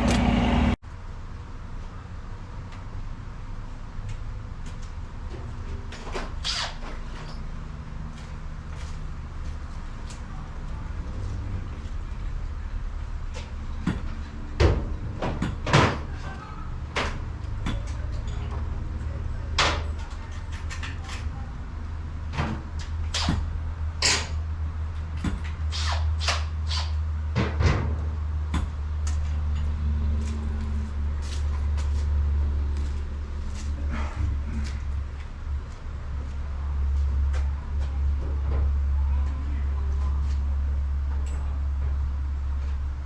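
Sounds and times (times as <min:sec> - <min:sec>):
steady low rumble: 0:00.0 - 0:01.2.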